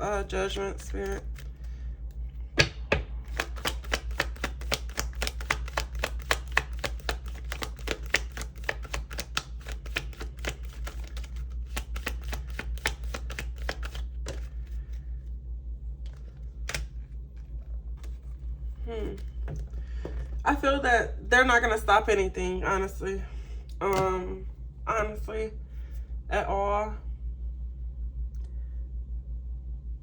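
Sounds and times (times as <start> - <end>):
cards being shuffled: 0.7 - 1.8, 3.2 - 15.3, 15.9 - 20.5
card snaps: 3.3 - 14.5.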